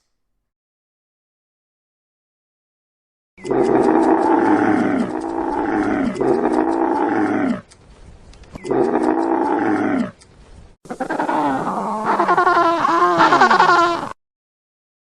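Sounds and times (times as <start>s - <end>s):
large animal calling: 3.4s - 7.7s, 8.6s - 10.2s, 10.9s - 14.2s
wavering animal call: 3.4s - 7.7s, 8.6s - 10.2s, 10.9s - 14.2s.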